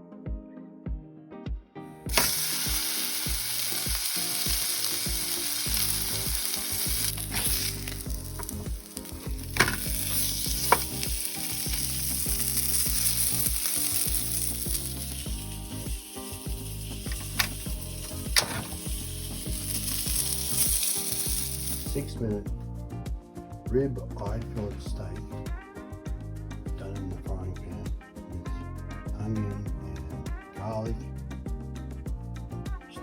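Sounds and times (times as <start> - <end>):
steak sizzling in a frying pan: 2.1 - 22.1.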